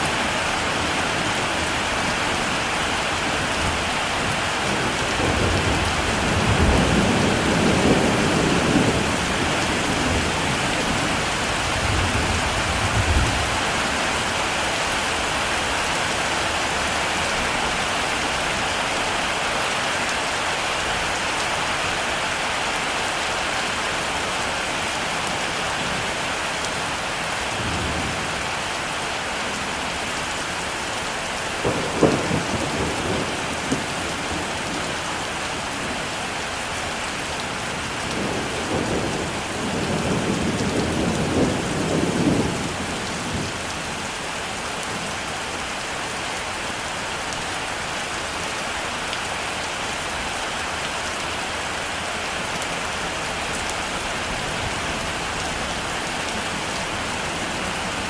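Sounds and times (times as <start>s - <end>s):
heavy rain: 0.0s - 58.0s
thunder rumbling: 3.6s - 13.7s, 31.6s - 35.0s.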